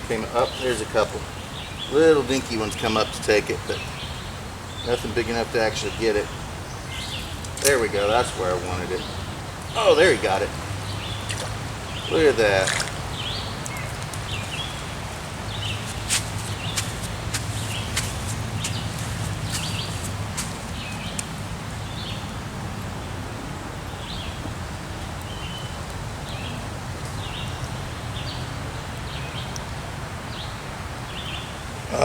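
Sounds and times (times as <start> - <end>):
background hiss: 0.0 - 23.1
small bird chirping: 0.4 - 21.3.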